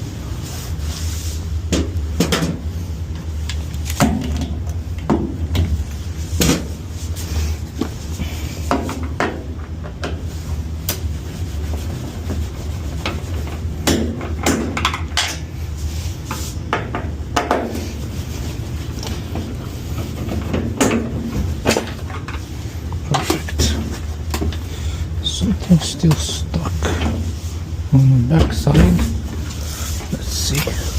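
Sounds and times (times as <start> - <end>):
steady low hum: 0.0 - 30.9.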